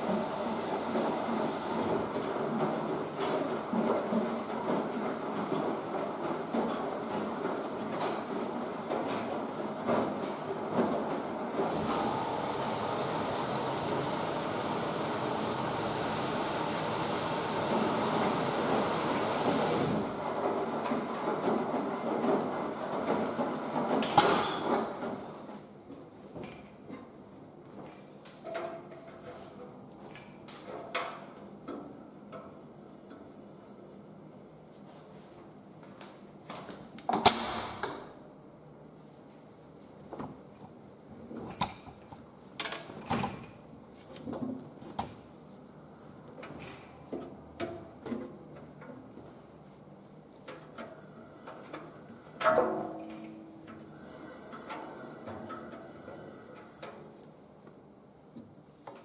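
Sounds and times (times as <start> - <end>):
washing machine rushing hiss: 0.0 - 2.9, 11.6 - 21.2.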